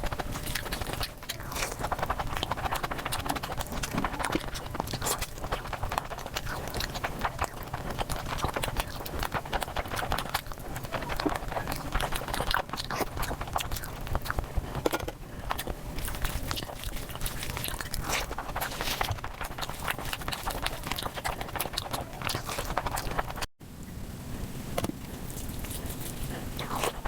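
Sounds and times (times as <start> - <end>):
sped-up chewing and crunching: 0.0 - 23.5, 25.0 - 27.0.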